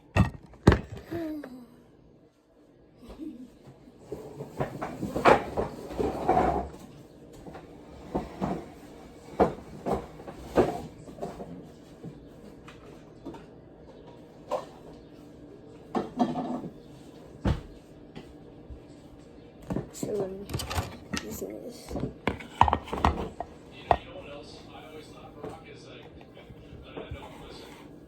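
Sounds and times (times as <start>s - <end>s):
cupboard doors opening and shutting: 0.0s - 1.1s, 19.7s - 23.4s
things being handled: 19.7s - 24.2s.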